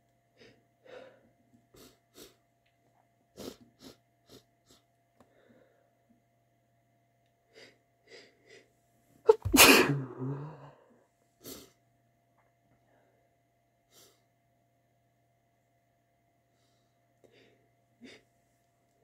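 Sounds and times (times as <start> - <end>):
person sneezing: 9.3 - 10.7.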